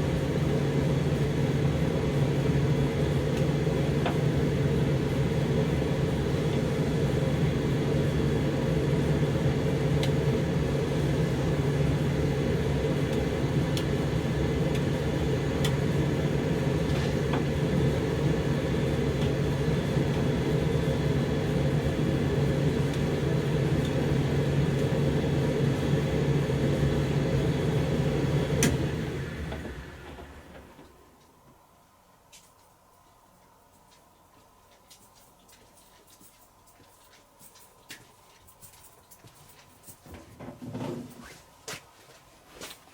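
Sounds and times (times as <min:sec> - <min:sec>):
tumble dryer motor and drum hum: 0:00.0 - 0:31.8.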